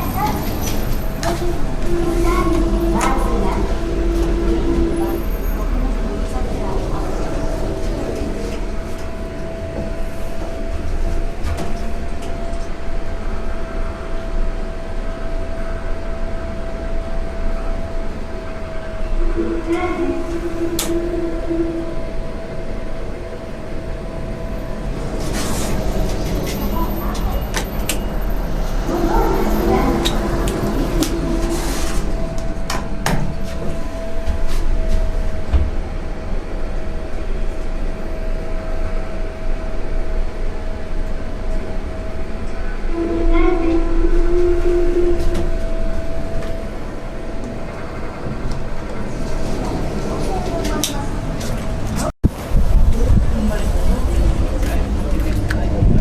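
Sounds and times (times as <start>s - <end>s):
elevator rumble: 0.0s - 56.0s
steady tone: 18.4s - 34.8s.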